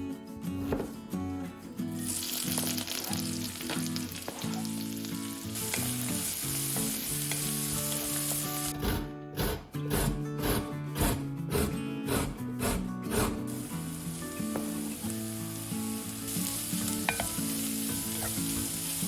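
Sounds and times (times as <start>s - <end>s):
food sizzling in a hot pan: 2.0s - 8.7s, 13.5s - 19.0s.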